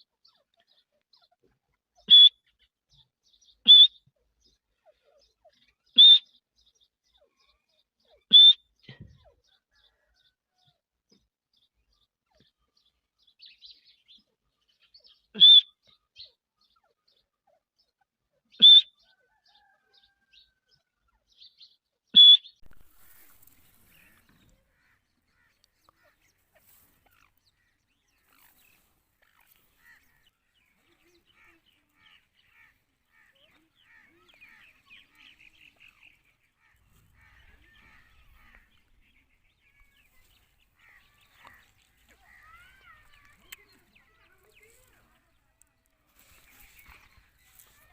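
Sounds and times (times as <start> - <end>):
faint bird chirping: 0.0 - 47.9
bird calling high-pitched: 2.0 - 2.5, 3.6 - 4.1, 5.9 - 6.4, 8.2 - 8.7, 15.3 - 15.9, 18.5 - 19.0, 22.2 - 45.0.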